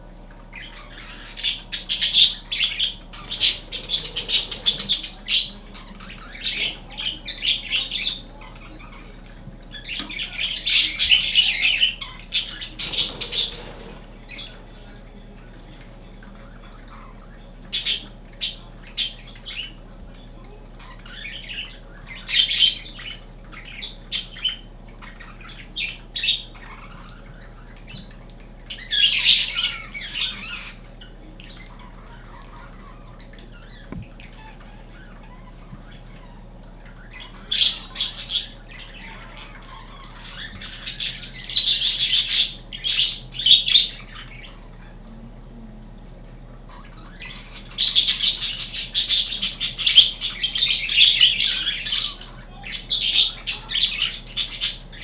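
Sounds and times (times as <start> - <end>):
budgerigar chirping and squawking: 0.3 - 15.5, 16.4 - 45.0, 46.6 - 55.0.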